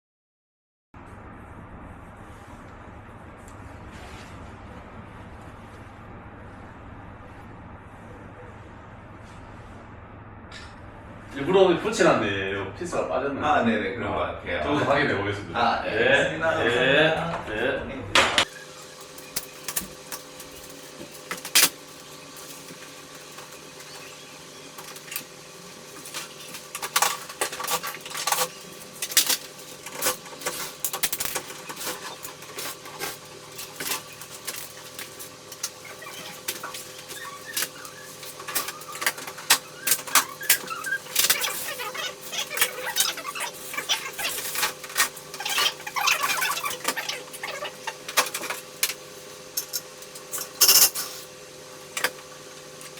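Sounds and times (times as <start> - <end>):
steady low hum: 1.0 - 52.9
small parts clicking and clinking: 25.9 - 49.0, 49.6 - 51.2.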